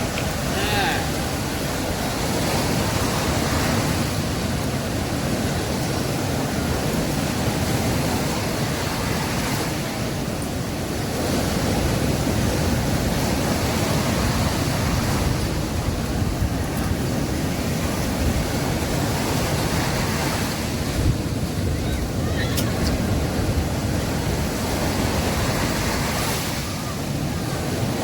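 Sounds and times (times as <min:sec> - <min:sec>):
waves breaking on a beach: 0:00.0 - 0:28.0.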